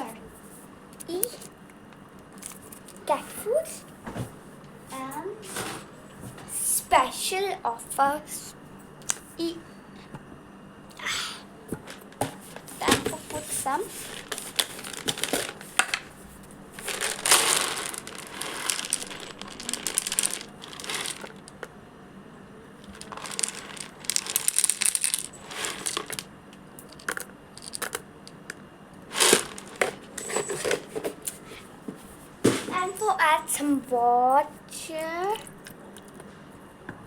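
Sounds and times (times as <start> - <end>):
food pieces rattling into a dish: 13.1 - 16.1, 16.8 - 21.6, 22.9 - 28.0, 29.1 - 30.9.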